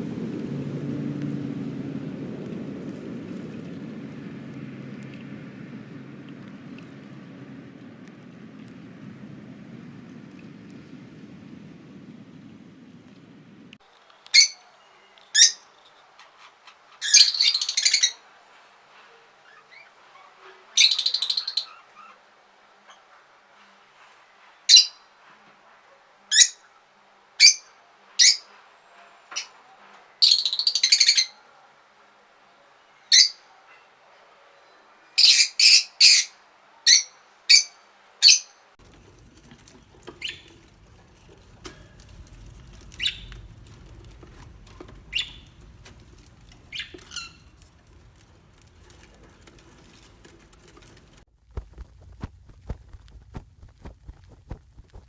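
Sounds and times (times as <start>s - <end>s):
low background rumble: 0.0s - 13.8s, 38.8s - 55.0s.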